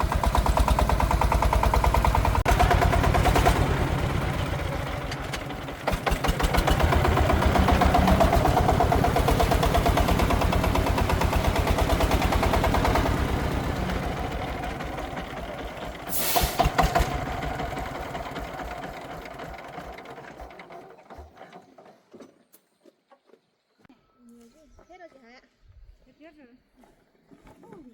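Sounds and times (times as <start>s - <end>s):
diesel engine thumping: 0.0s - 21.4s
brief hiss: 16.1s - 16.8s.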